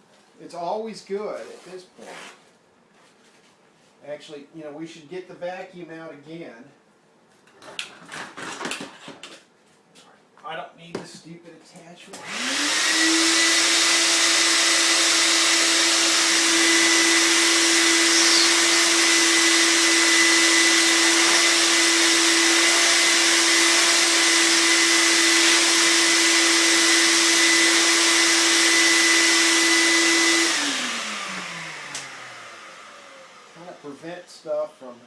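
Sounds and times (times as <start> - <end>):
vacuum cleaner running: 12.2 - 34.0.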